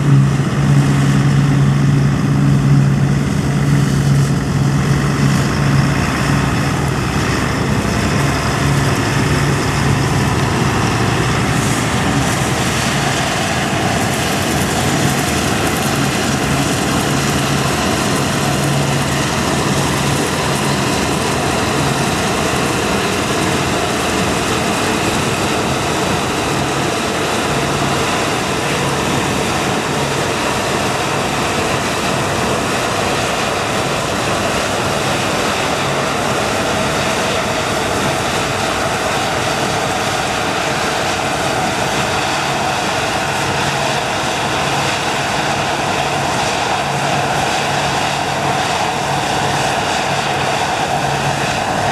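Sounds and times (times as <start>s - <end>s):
heavy farm machinery running: 0.0s - 51.9s.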